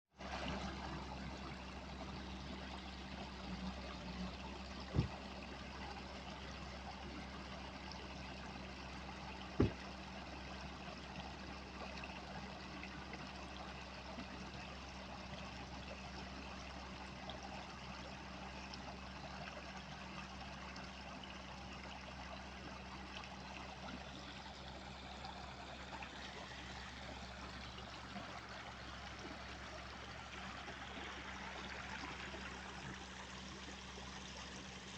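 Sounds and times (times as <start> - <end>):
river water flowing: 0.2 - 34.9
low thump: 4.9 - 5.2, 9.6 - 9.8.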